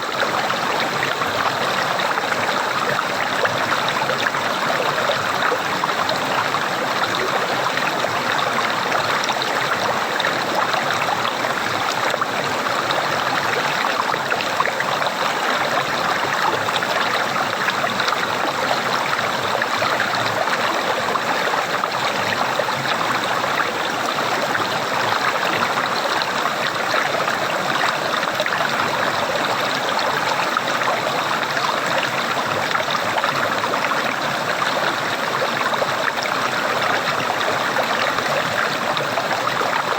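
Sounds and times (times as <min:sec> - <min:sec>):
running water gurgling: 0:00.0 - 0:39.9.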